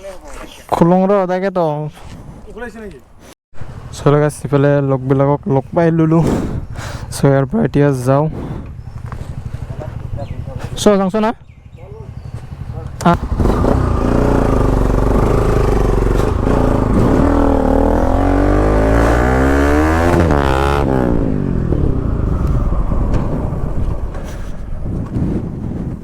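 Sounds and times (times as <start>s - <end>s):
second engine passing: 3.6s - 5.3s, 8.2s - 25.6s
motorcycle engine revving: 3.6s - 7.3s, 8.2s - 26.0s.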